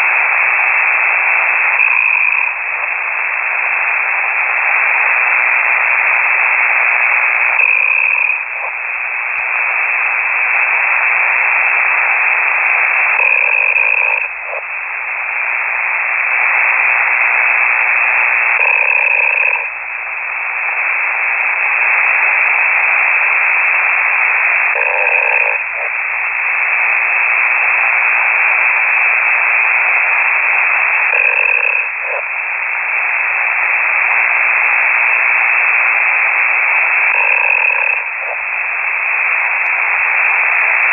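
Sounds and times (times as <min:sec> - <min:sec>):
radio hiss: 0:00.0 - 0:40.9.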